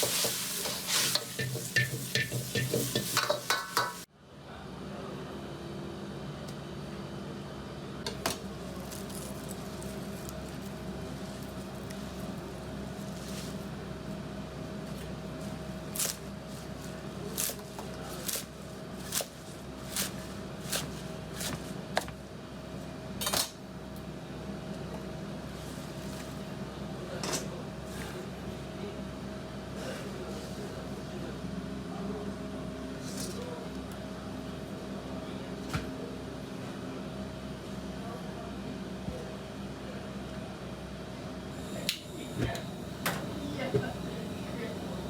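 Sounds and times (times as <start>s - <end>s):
kitchen equipment hum: 0.0s - 4.1s, 5.6s - 31.3s, 41.3s - 45.0s
utensils and dishes clattering: 0.0s - 4.1s.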